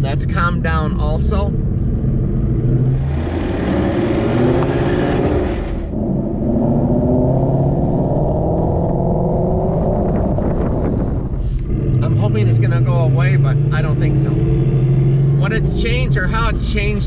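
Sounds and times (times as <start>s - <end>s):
car engine and exhaust drone: 0.0s - 17.0s
gearbox rumble and hum: 0.0s - 17.0s.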